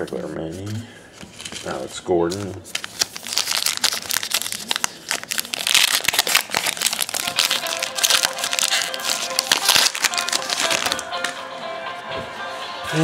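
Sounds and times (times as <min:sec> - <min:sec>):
cards being handled: 0:00.0 - 0:11.4
card wrappers crinkling: 0:01.2 - 0:11.4.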